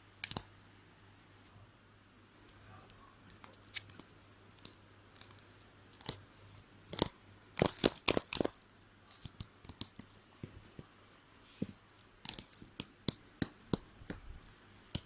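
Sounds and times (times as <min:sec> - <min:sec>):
crisp clicks and scrapes: 0:06.9 - 0:10.6.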